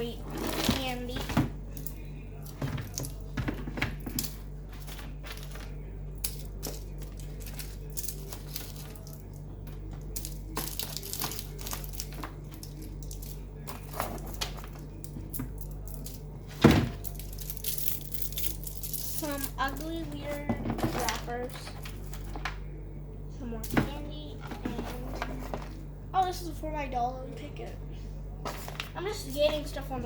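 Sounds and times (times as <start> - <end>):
candy wrappers crinkling: 1.7 - 16.3, 16.9 - 22.6.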